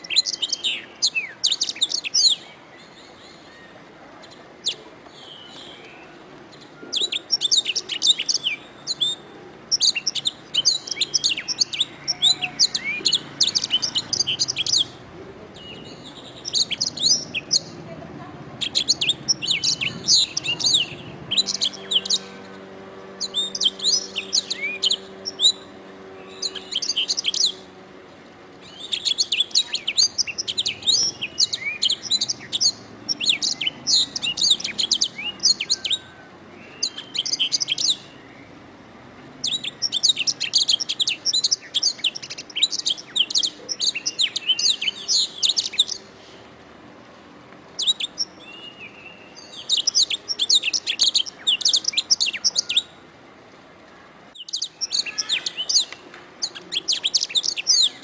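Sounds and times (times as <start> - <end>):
canary singing: 0.0 - 46.3, 47.7 - 53.1, 54.3 - 58.0.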